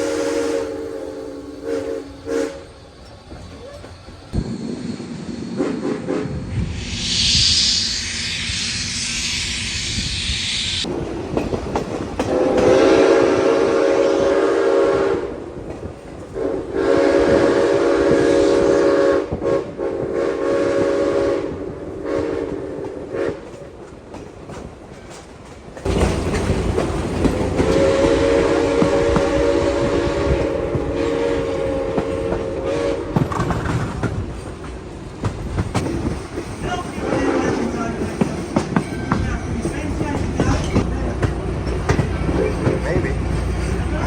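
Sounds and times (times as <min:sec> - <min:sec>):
steam whistle blasts: 0:00.0 - 0:02.8, 0:05.6 - 0:10.9, 0:12.3 - 0:15.4, 0:16.4 - 0:23.5, 0:27.6 - 0:33.4
steam hissing: 0:00.0 - 0:15.4, 0:25.9 - 0:44.0
low rumble of moving train: 0:00.0 - 0:44.0.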